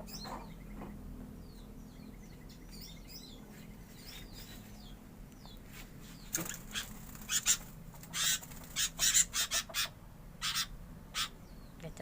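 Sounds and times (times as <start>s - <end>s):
songbirds chirping: 0.0s - 12.0s
fast bird trill: 6.2s - 11.5s.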